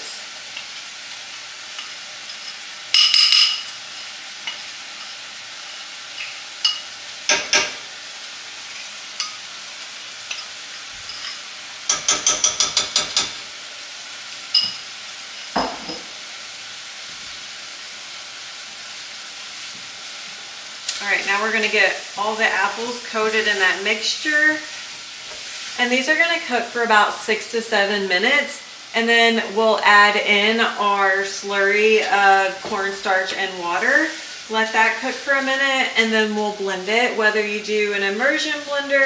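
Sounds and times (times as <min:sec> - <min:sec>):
apples sizzling in butter: 0:00.0 - 0:39.0
spoon tapping pot rim: 0:01.8 - 0:03.8, 0:11.1 - 0:13.4, 0:14.5 - 0:14.9
spoon clinking against pot: 0:01.8 - 0:05.2, 0:06.2 - 0:07.8, 0:10.3 - 0:13.4, 0:14.5 - 0:16.1.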